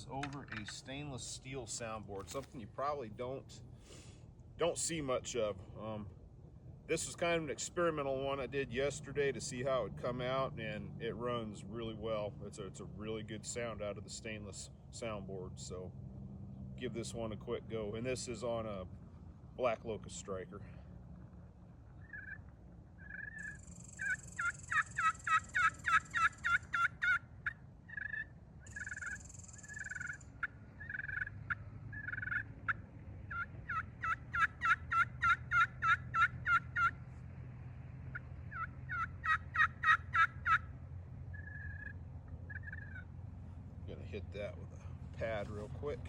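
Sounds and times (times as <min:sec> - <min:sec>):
turkey pot call yelps: 0:22.0 - 0:37.0, 0:38.1 - 0:40.7, 0:41.3 - 0:43.1.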